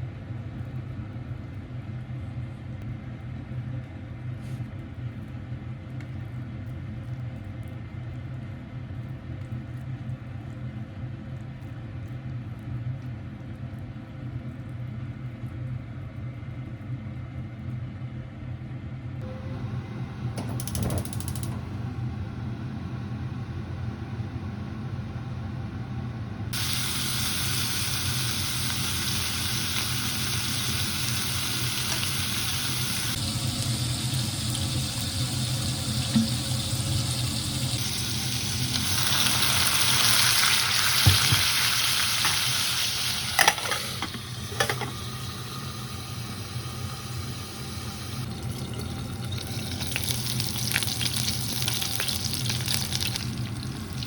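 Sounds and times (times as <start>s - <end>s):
sharp clicks: 20.5s - 21.6s
food sizzling in a pan: 26.6s - 54.0s.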